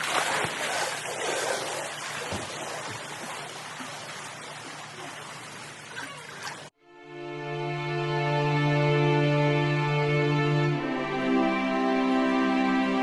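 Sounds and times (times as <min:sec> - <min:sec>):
water rushing and splashing: 0:00.0 - 0:06.7.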